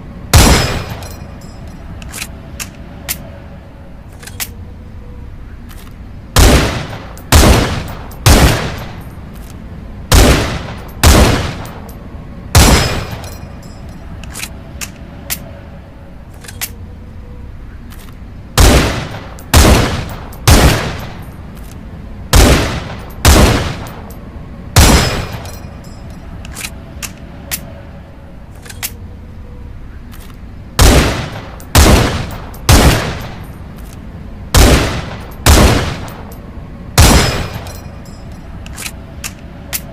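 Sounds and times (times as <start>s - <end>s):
rifle shots with ringing tail: 0.3s - 1.3s, 6.4s - 9.0s, 10.1s - 11.9s, 12.5s - 13.4s, 18.6s - 21.2s, 22.3s - 24.1s, 24.8s - 25.7s, 30.8s - 33.5s, 34.6s - 36.4s, 37.0s - 38.0s.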